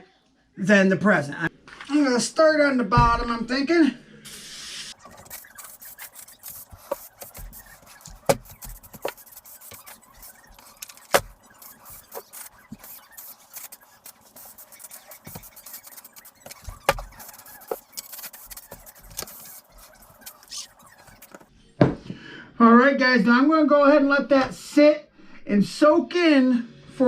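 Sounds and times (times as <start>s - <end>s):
plastic squeaks and rubs: 4.3s - 21.5s.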